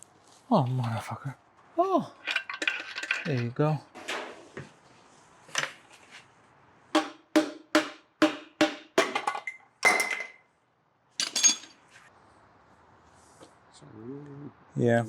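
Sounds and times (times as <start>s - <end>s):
hammer knocks on metal: 7.0s - 9.3s.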